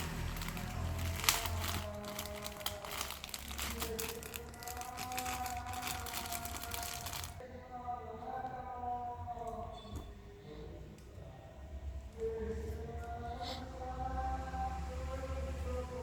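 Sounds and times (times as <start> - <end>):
plastic packaging crinkling: 0.0 - 7.4
background music: 0.0 - 16.0.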